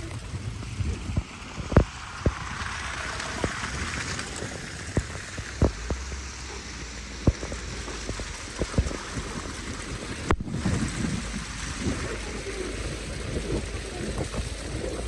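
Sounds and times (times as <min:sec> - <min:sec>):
snowstorm hiss: 0:00.0 - 0:15.0
drops ticking on a surface: 0:04.9 - 0:06.1, 0:07.2 - 0:09.6.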